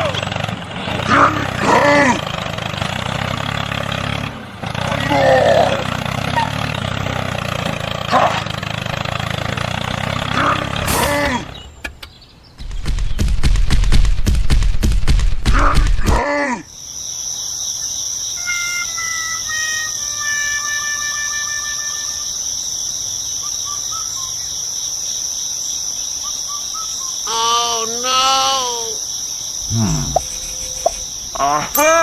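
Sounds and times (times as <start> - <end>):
insects droning: 0.0 - 32.0
bird calls: 4.9 - 7.3, 10.2 - 13.5, 16.7 - 32.0
rising and falling pitched call: 29.6 - 32.0.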